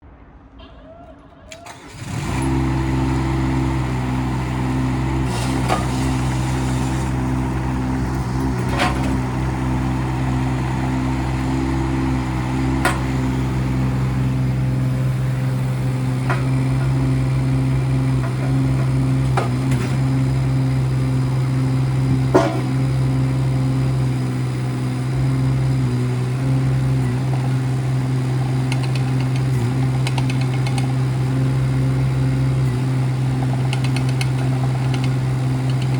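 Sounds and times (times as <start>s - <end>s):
diesel engine running: 1.6s - 35.9s.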